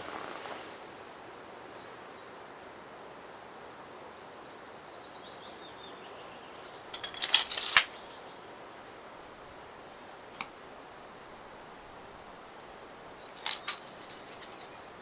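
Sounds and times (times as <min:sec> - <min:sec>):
rustle and clatter: 0:00.0 - 0:00.9, 0:06.8 - 0:08.6, 0:12.1 - 0:15.0.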